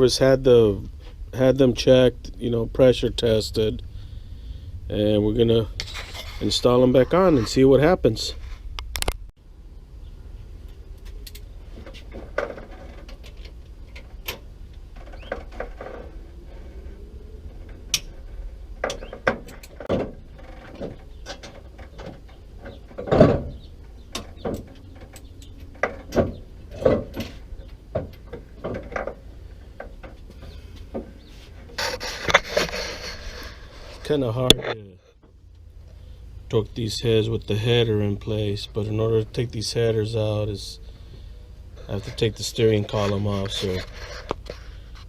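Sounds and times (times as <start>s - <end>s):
rustling: 10.6s - 34.5s, 40.8s - 45.0s.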